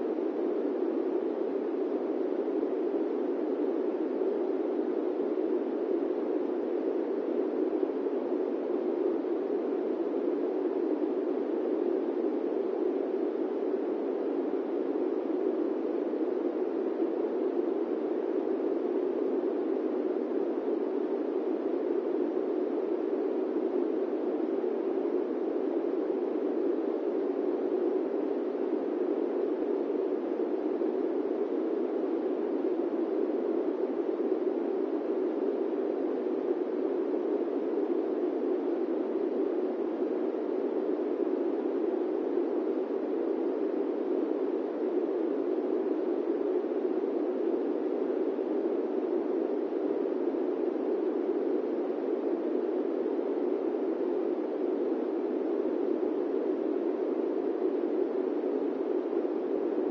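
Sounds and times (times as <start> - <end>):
airplane cabin white noise: 0.0 - 59.9.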